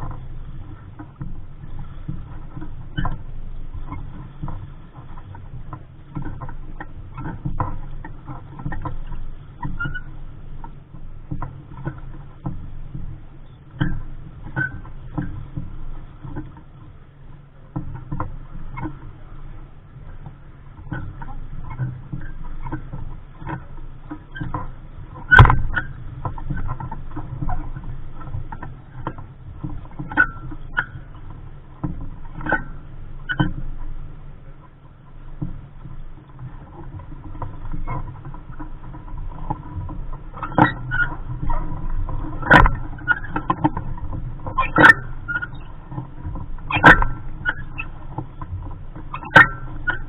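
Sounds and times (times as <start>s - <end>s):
low steady rumble: 0.0s - 50.0s
water slapping against hull: 0.0s - 50.0s.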